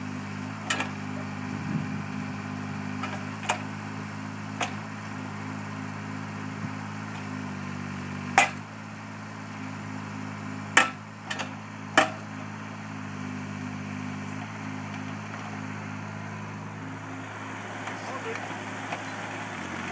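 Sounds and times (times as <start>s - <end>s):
excavator diesel engine running: 0.0s - 19.9s
sharp metal knocks: 8.4s - 8.6s, 10.8s - 12.2s.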